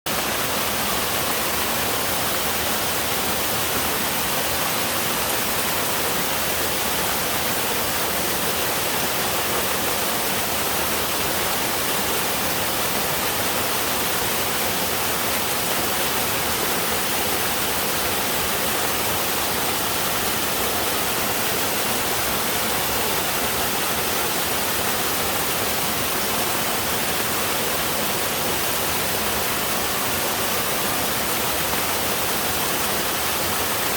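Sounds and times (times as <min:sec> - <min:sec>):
waterfall rushing: 0:00.1 - 0:33.9.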